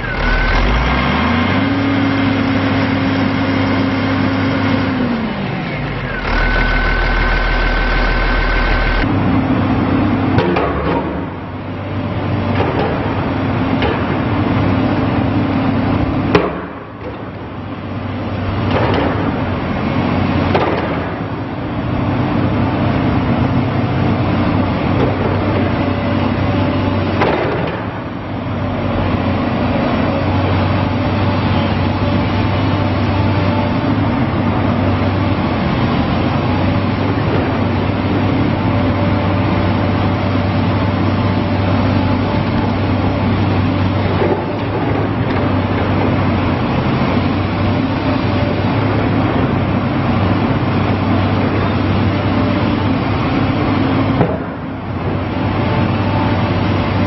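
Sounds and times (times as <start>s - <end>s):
excavator diesel engine running: 0.0s - 57.0s
faint high whine: 6.0s - 9.1s.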